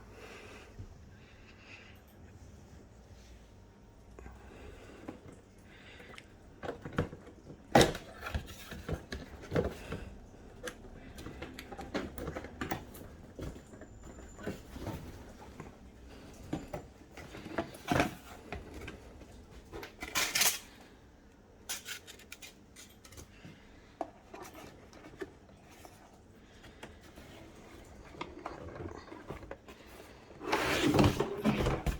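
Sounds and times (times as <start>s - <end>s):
hands handling plastic parts: 6.5s - 31.9s.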